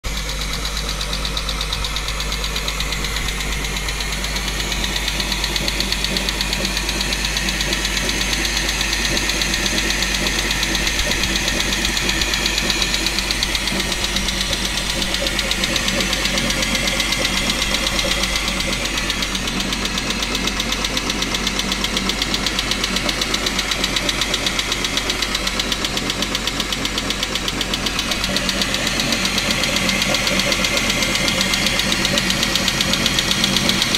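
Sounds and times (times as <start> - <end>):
engine knocking rattle: 0.0 - 33.9.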